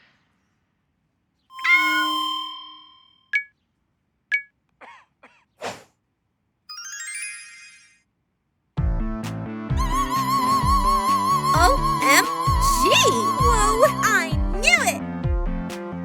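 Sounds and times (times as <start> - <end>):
rising sparkly chime notes: 1.6 - 3.2, 6.7 - 8.0
bell-like ding: 1.6 - 3.5
short high pings: 1.6 - 3.5
quick whooshes: 5.6 - 5.9.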